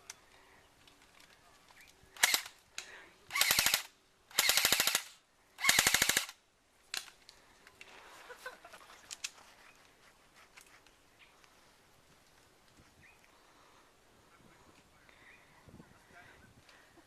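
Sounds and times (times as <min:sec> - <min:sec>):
airsoft gun firing bursts: 0:02.2 - 0:02.5, 0:03.3 - 0:06.4.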